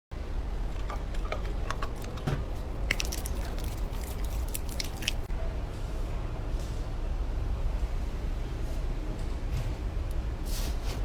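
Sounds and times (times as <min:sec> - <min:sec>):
slime squishing with wet pops: 0:00.8 - 0:05.3.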